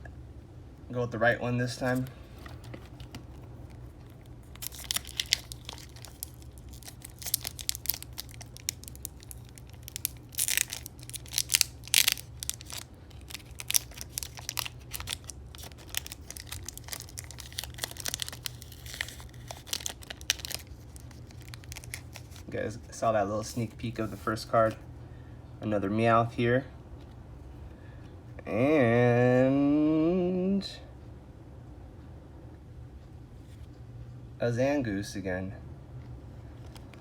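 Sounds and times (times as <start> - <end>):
cards being handled: 1.6 - 22.6, 23.5 - 24.8
wrapper tearing and crinkling: 1.8 - 22.5.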